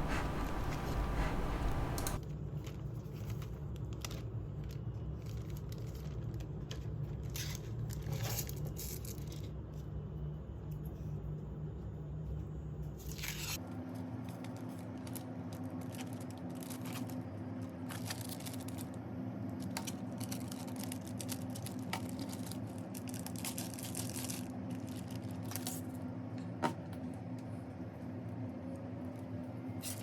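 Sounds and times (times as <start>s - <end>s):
steady low hum: 0.0s - 2.2s.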